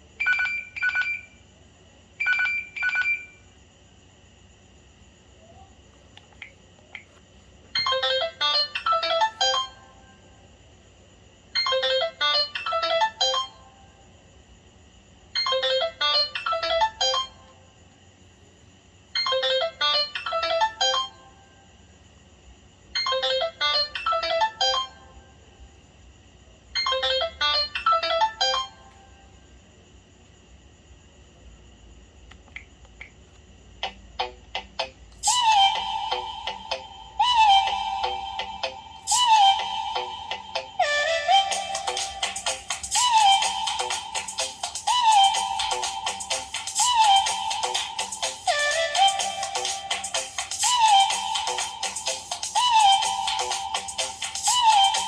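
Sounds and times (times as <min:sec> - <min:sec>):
electronic melody ringtone: 0:00.2 - 0:01.3, 0:02.2 - 0:03.4, 0:35.2 - 0:55.0.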